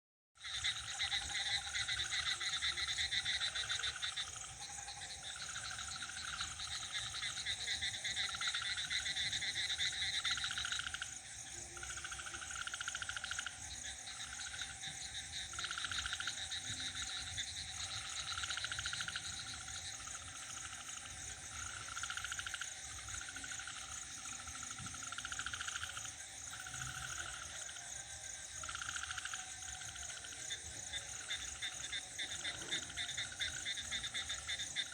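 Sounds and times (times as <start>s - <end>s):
crickets trilling: 0.4s - 34.9s
frogs calling: 0.4s - 34.9s.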